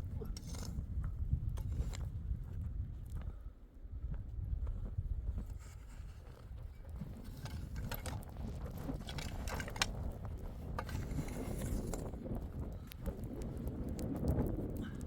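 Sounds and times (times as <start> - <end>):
steady low rumble: 0.0 - 15.0
sharp clicks and rattles: 7.1 - 12.1.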